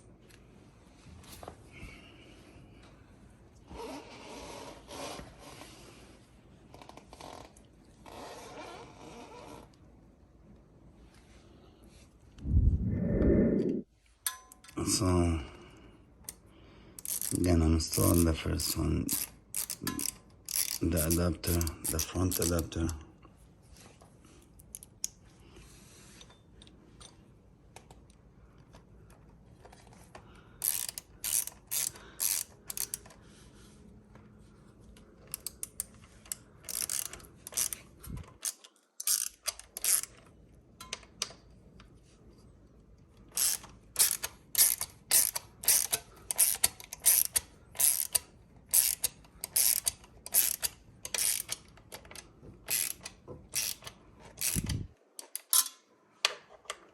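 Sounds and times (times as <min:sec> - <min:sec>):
ratchet wrench clicking: 0:17.0 - 0:22.7, 0:30.6 - 0:33.1, 0:35.3 - 0:40.2, 0:43.3 - 0:55.7.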